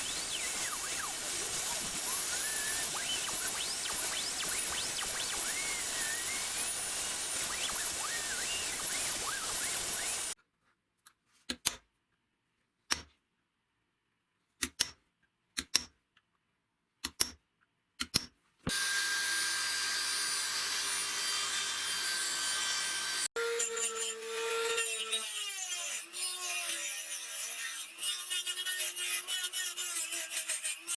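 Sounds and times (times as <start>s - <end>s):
power tool running: 0.0s - 10.4s, 18.7s - 25.6s.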